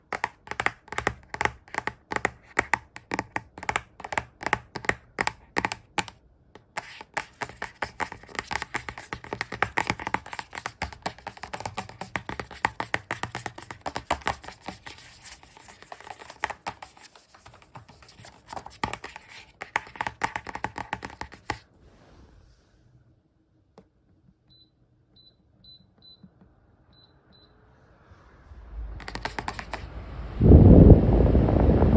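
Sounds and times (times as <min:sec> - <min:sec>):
fingers tapping on hard surface: 0:00.0 - 0:21.6, 0:29.0 - 0:29.9.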